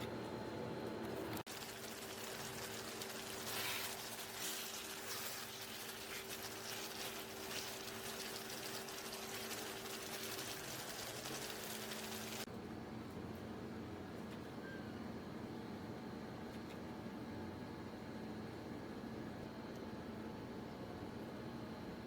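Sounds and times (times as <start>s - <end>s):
curry bubbling in a pot: 1.5s - 12.5s.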